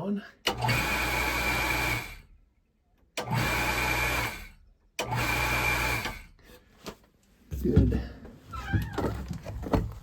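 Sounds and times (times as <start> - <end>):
electric pump motor humming: 0.5 - 2.3, 3.2 - 6.3.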